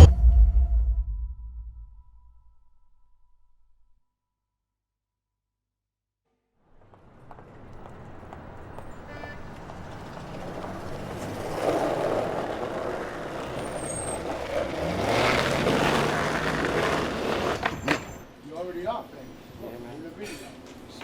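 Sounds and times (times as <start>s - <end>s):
city street traffic: 6.6s - 21.0s
heavy vehicle engine pulling away: 6.7s - 18.3s.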